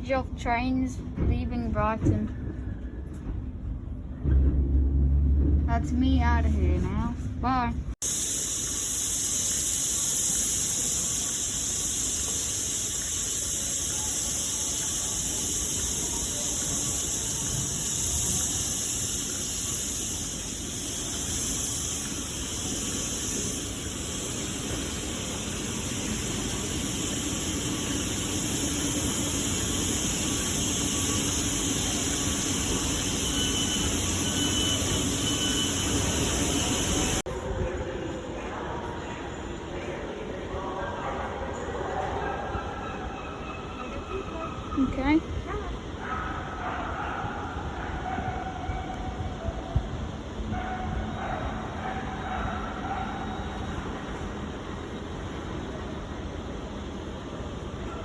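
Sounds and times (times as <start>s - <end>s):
low rumble: 3.3s - 8.0s
steady hiss: 8.0s - 37.2s.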